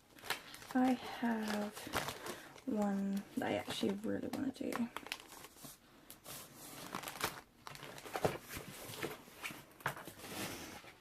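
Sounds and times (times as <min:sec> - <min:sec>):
paper rustling: 0:05.0 - 0:10.9.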